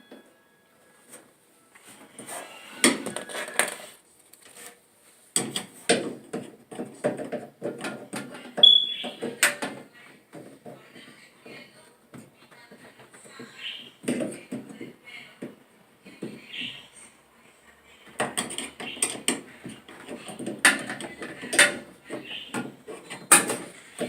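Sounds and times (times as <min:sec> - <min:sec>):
tools knocking and rattling: 0:05.4 - 0:10.8, 0:18.2 - 0:24.0.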